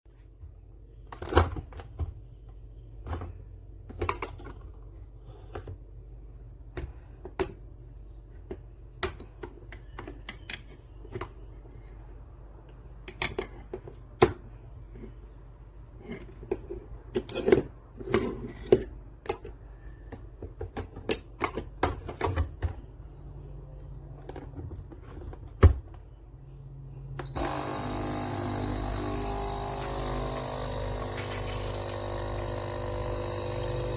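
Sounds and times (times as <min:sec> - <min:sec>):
pump buzzing hum: 0:27.2 - 0:33.9.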